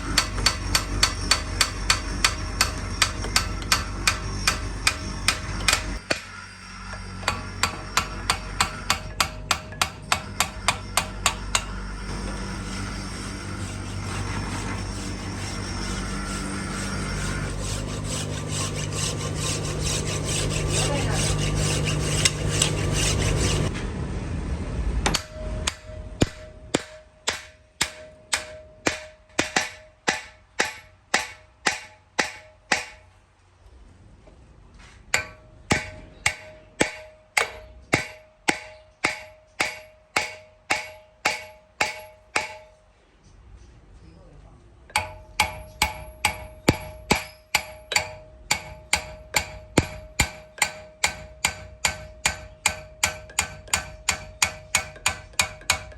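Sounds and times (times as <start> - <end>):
hammer striking metal: 0.0 - 12.3, 25.0 - 33.1, 35.1 - 42.8, 44.9 - 55.9
machine running: 10.4 - 25.4.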